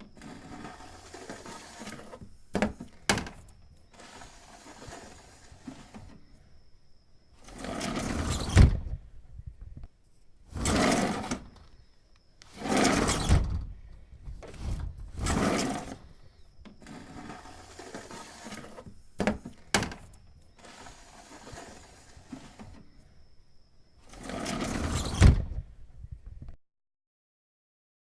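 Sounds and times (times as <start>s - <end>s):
window scraping open and closed: 0.0s - 6.4s, 7.3s - 9.1s, 10.4s - 11.8s, 12.4s - 23.0s, 24.0s - 25.8s
quiet rushing noise: 0.0s - 26.3s.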